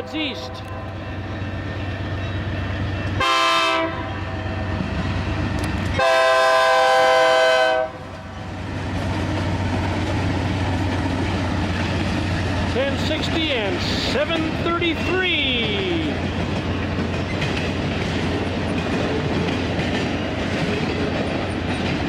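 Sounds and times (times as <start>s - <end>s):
locomotive air horn: 0.0s - 1.0s, 3.2s - 4.7s, 6.0s - 8.0s
diesel engines rumbling: 0.0s - 22.0s
train rolling noise: 0.0s - 22.0s.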